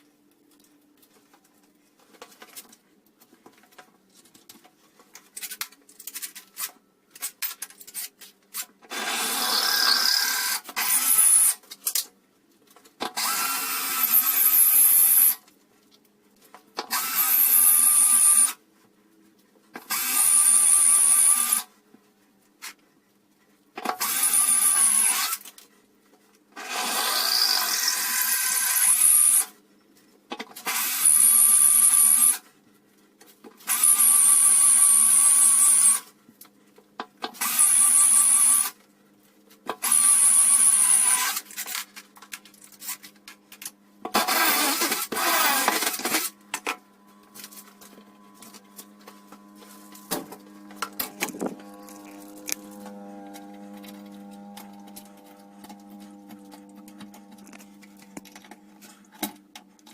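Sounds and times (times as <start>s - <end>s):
electric drill whining: 8.9s - 11.6s, 13.2s - 15.4s, 16.9s - 18.6s, 19.9s - 21.7s, 24.0s - 25.4s, 26.6s - 29.5s, 30.6s - 32.4s, 33.7s - 36.1s, 37.4s - 38.8s, 39.8s - 41.9s, 44.1s - 46.4s, 47.0s - 58.0s.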